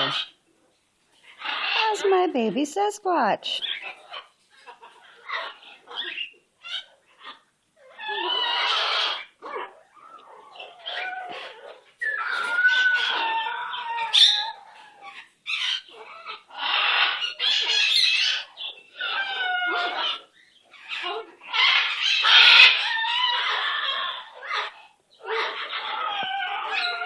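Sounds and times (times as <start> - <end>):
parrot squawking: 0.0 - 0.4, 1.4 - 2.2, 3.5 - 27.0
parrot chirps and squeaks: 3.5 - 27.0.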